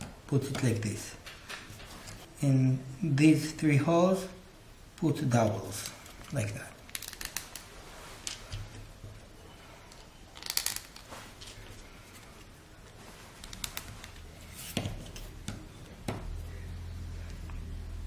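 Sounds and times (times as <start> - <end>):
low steady hum: 0.0 - 18.0
small parts clicking and tapping: 6.2 - 7.6, 9.9 - 11.5.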